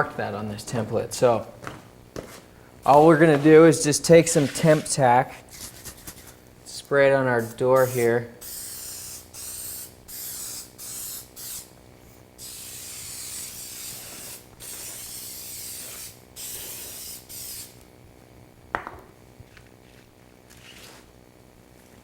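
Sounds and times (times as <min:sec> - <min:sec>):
aerosol spray can hissing: 0:07.4 - 0:11.7, 0:12.4 - 0:17.8.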